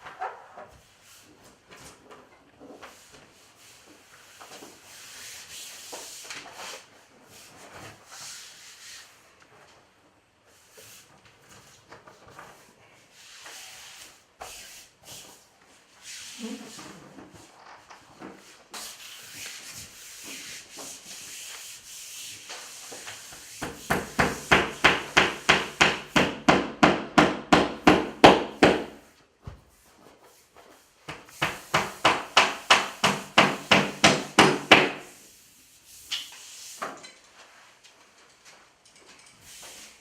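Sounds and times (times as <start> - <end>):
hollow knocking on wall panel: 23.6 - 29.0, 31.1 - 35.1.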